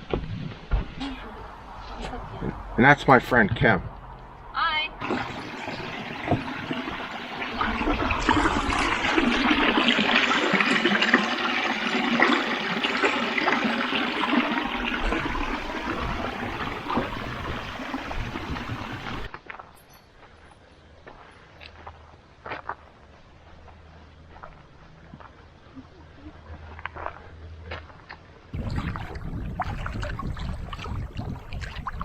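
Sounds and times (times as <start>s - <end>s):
water splashing and gurgling: 1.0s - 19.3s, 28.5s - 32.0s.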